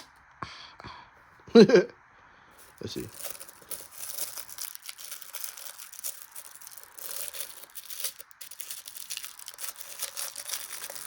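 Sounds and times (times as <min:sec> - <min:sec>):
packaging crinkling and rustling: 0:02.6 - 0:11.0.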